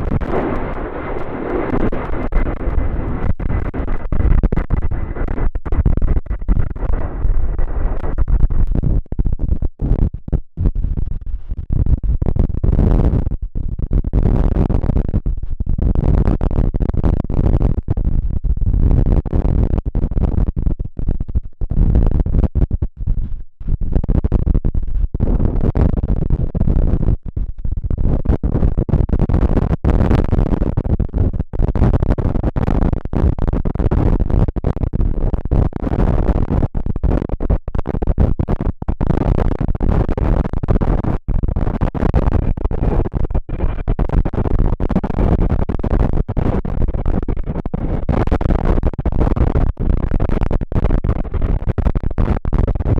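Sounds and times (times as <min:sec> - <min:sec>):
wind buffeting microphone: 0:00.0 - 0:08.8.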